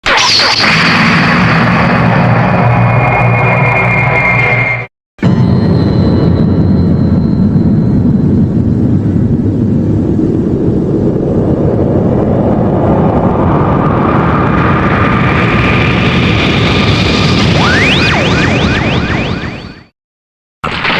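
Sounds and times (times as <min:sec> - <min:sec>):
engine-like rumbling roar: 0:00.2 - 0:19.1.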